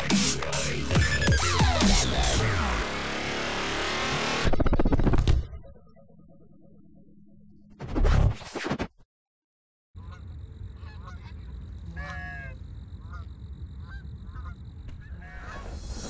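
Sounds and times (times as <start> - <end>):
geese honking: 10.0 - 15.8.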